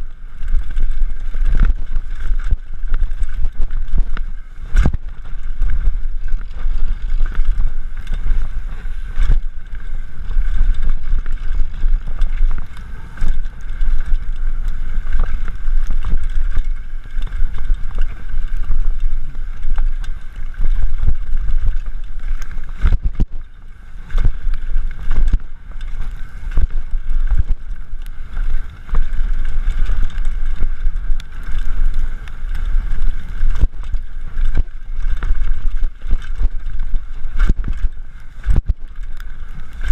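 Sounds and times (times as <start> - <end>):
wind buffeting microphone: 0.0 - 39.9.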